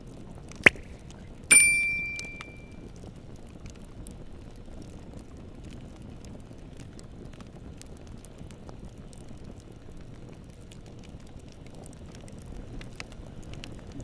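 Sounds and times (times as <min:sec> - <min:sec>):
fire crackling: 0:00.0 - 0:14.0
wood fire rumbling: 0:02.9 - 0:14.0.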